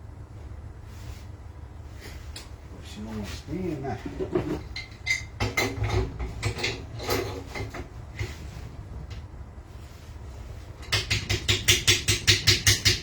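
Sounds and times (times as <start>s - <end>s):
low steady hum: 0.0s - 11.6s.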